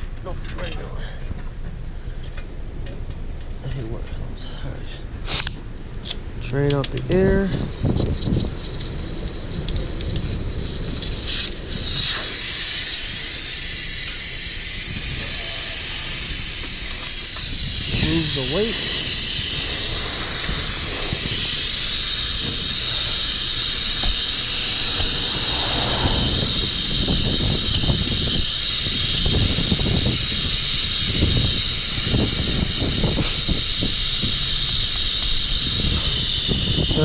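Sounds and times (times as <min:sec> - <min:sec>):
air hissing from tire valve: 0:04.4 - 0:06.3, 0:07.1 - 0:37.0.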